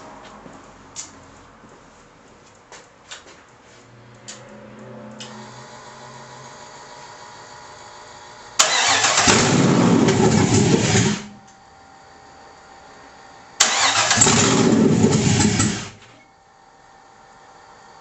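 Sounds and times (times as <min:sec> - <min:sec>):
engine cranking and coughing to life: 0:08.6 - 0:11.3, 0:13.6 - 0:16.0.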